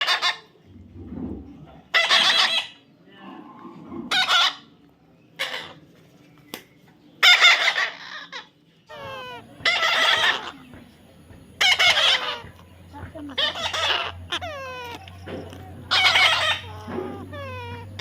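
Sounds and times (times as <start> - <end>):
parrot squawking: 1.9 - 2.8, 4.1 - 4.7, 7.2 - 18.0.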